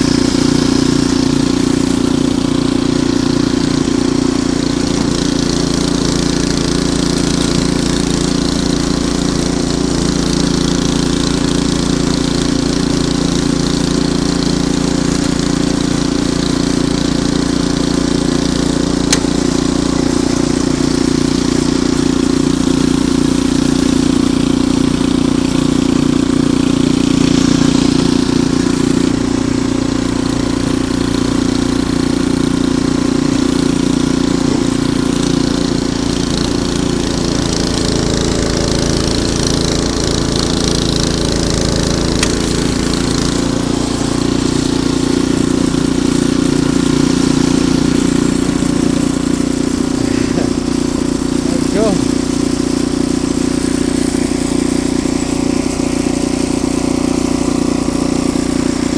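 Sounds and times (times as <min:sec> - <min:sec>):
snowblower engine running: 0:00.0 - 0:58.9.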